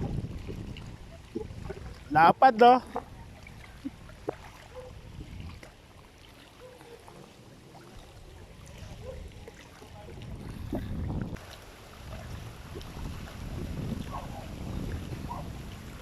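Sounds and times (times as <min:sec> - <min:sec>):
wind buffeting microphone: 0:00.0 - 0:02.2, 0:02.8 - 0:05.8, 0:08.3 - 0:16.0.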